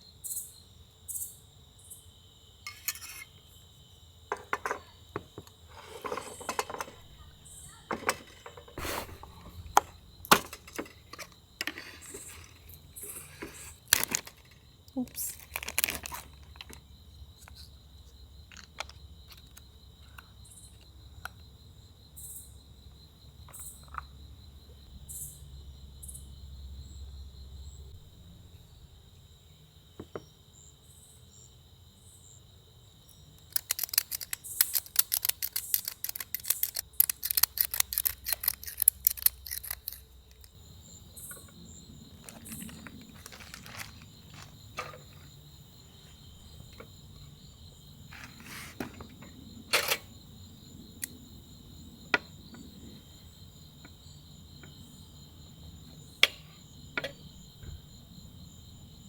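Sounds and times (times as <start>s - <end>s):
crickets chirping: 0.0s - 59.0s
sharp clicks: 33.4s - 40.6s.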